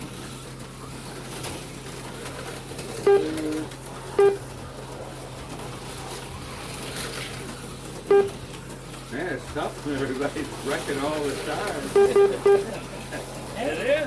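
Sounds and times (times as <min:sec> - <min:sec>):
steady low hum: 0:00.0 - 0:14.0
brief lower tone: 0:03.0 - 0:04.4
short pitched beeps: 0:03.1 - 0:03.6, 0:11.9 - 0:12.6.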